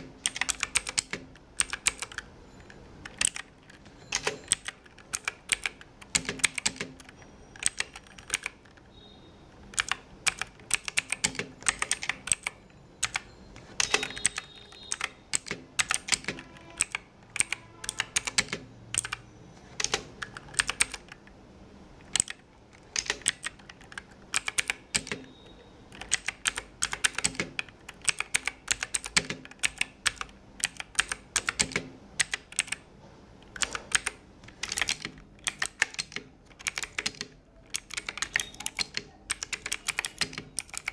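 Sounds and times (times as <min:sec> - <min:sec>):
keyboard key clicks: 0:09.7 - 0:19.2, 0:19.8 - 0:21.3, 0:22.0 - 0:25.3, 0:25.9 - 0:32.8, 0:33.4 - 0:40.9.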